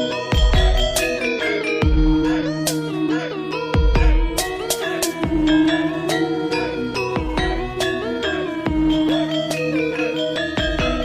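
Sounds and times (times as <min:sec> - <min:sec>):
gliding synth melody: 0:00.0 - 0:11.0.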